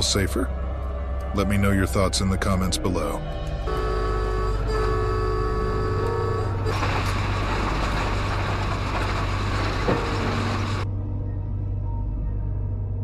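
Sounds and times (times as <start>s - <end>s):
train horn: 3.6s - 8.2s.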